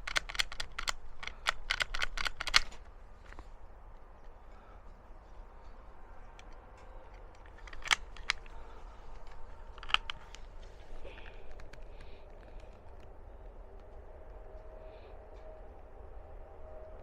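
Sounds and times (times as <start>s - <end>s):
rifle metallic clicks and knocks: 0.0s - 4.3s, 6.2s - 13.1s.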